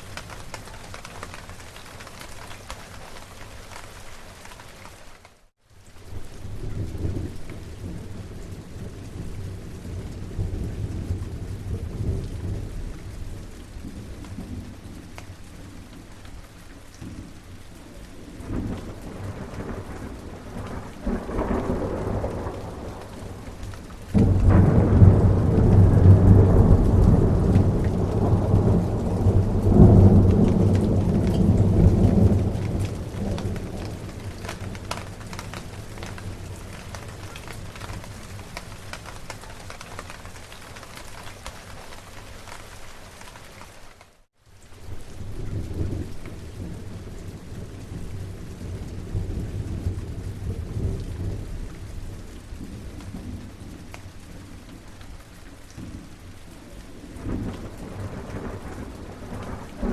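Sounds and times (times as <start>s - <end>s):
steady rain: 0.0s - 59.9s
distant thunder rumbles: 17.0s - 41.5s, 55.7s - 59.9s
loud thunderclap: 18.4s - 36.4s, 57.2s - 59.9s.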